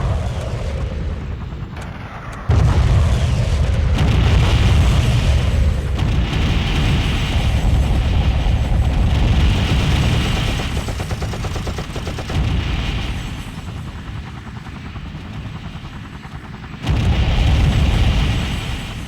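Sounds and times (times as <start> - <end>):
heavy low rumble: 0.0 - 11.3
rapid machine-gun fire: 1.9 - 14.2, 16.8 - 19.0.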